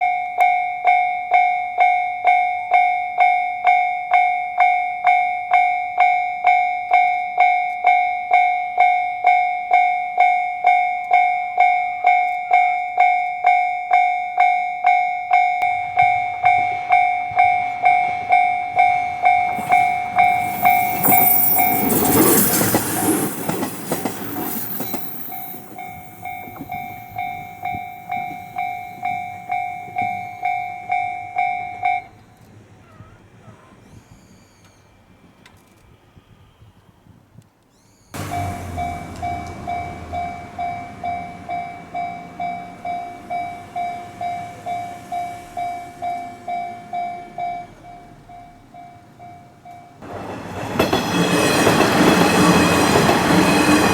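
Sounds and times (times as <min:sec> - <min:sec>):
level crossing bell ringing: 0:00.0 - 0:32.2, 0:38.2 - 0:50.0
diesel railcar passing: 0:00.0 - 0:36.9, 0:37.7 - 0:53.9.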